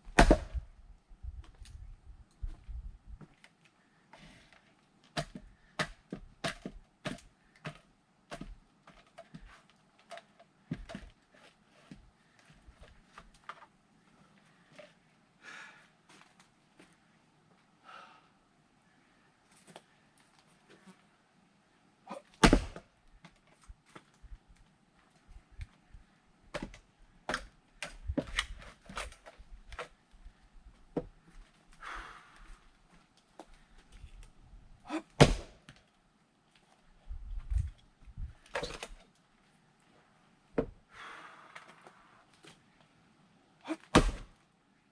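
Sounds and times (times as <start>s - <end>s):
wooden logs knocking and clattering: 0.0s - 0.6s, 4.6s - 13.7s, 22.1s - 24.2s, 26.5s - 30.0s, 34.9s - 35.8s, 37.4s - 39.1s, 43.7s - 44.4s.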